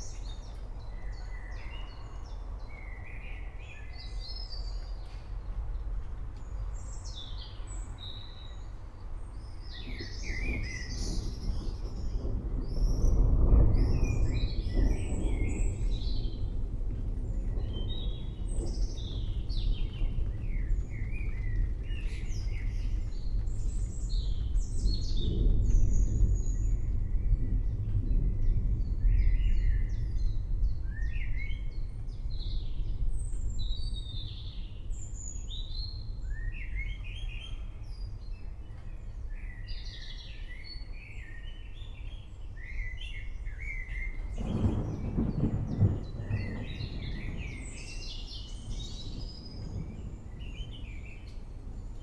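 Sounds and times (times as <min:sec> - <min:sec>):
distant thunder rumble: 0:09.4 - 0:38.0, 0:43.4 - 0:52.0.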